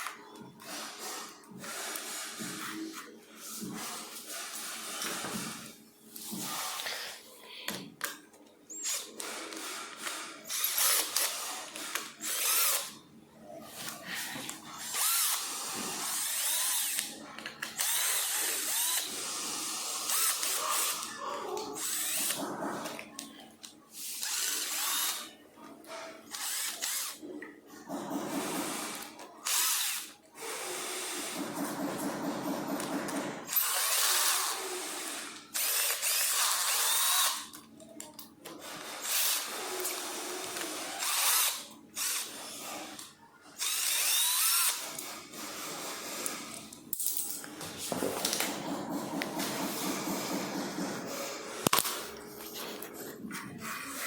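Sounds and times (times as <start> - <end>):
power drill running: 3.7 - 5.7, 8.8 - 13.0, 14.8 - 21.1, 21.8 - 22.4, 24.0 - 25.3, 26.3 - 27.2, 28.3 - 37.5, 38.6 - 46.6.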